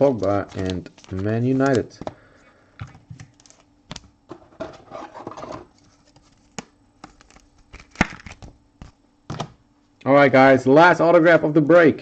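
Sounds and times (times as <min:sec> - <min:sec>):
trading cards handled on table: 0:00.0 - 0:02.2.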